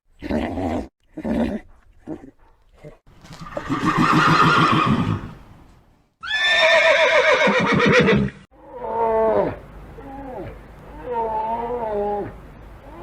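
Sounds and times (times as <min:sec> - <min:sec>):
horse whinnying: 0:03.4 - 0:05.4, 0:06.2 - 0:09.5.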